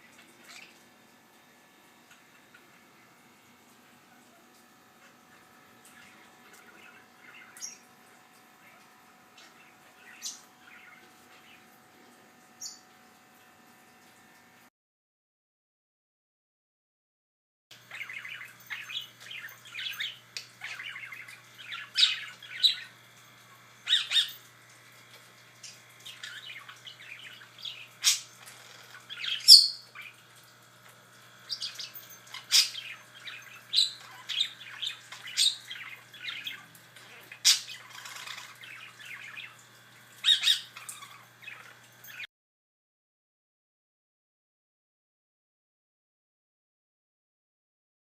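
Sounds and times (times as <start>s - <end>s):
parrot squawks: 23.8s - 24.4s, 28.0s - 29.9s, 31.5s - 39.5s, 40.2s - 42.2s
parrot chirps and whistles: 29.2s - 29.9s, 40.2s - 41.2s.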